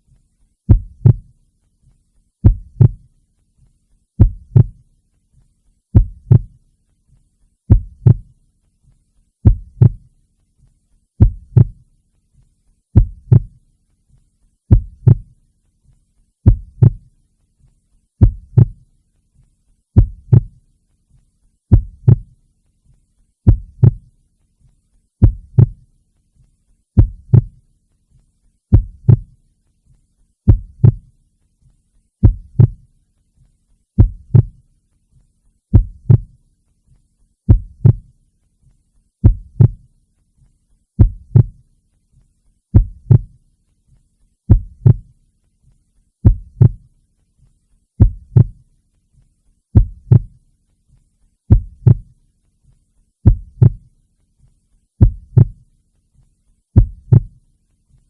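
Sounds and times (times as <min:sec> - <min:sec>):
heartbeat: 0:00.1 - 0:01.4, 0:02.4 - 0:03.2, 0:04.2 - 0:04.9, 0:05.9 - 0:06.6, 0:07.7 - 0:08.4, 0:09.4 - 0:10.2, 0:11.2 - 0:11.9, 0:12.9 - 0:13.6, 0:14.7 - 0:15.4, 0:16.4 - 0:17.2, 0:18.2 - 0:18.9, 0:20.0 - 0:20.6, 0:21.7 - 0:22.4, 0:23.4 - 0:24.1, 0:25.2 - 0:25.9, 0:27.0 - 0:27.6, 0:28.7 - 0:29.4, 0:30.5 - 0:31.1, 0:32.2 - 0:32.9, 0:34.0 - 0:34.6, 0:35.7 - 0:36.4, 0:37.5 - 0:38.2, 0:39.2 - 0:39.9, 0:41.0 - 0:41.7, 0:42.7 - 0:43.4, 0:44.5 - 0:45.2, 0:46.2 - 0:46.9, 0:48.0 - 0:48.7, 0:49.7 - 0:50.4, 0:51.5 - 0:52.2, 0:53.2 - 0:53.9, 0:55.0 - 0:55.7, 0:56.8 - 0:57.4.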